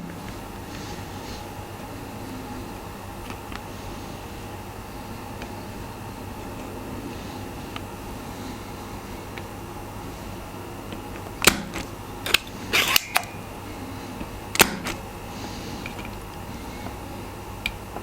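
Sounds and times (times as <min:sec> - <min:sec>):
steady low hum: 0:00.0 - 0:18.0
tools clicking and clacking: 0:11.4 - 0:13.4, 0:14.6 - 0:15.0.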